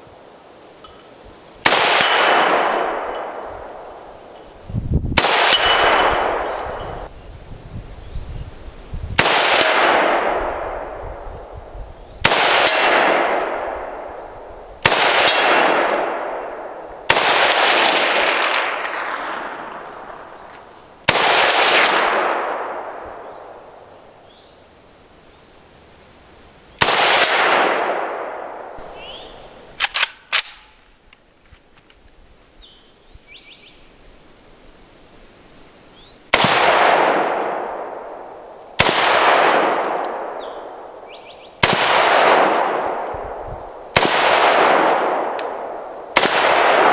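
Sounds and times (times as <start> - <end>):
rifle shots with echo: 1.6 - 4.1, 5.2 - 7.1, 9.2 - 23.9, 26.8 - 30.7, 36.3 - 46.9.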